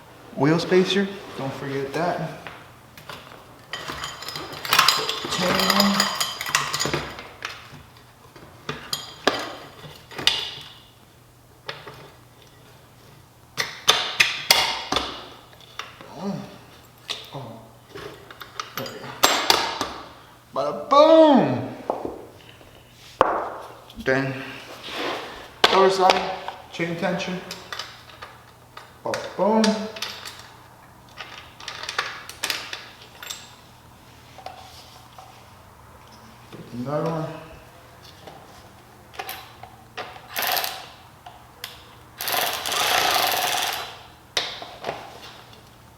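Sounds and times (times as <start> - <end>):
metal chain clinking: 3.6 - 7.3, 40.3 - 41.0.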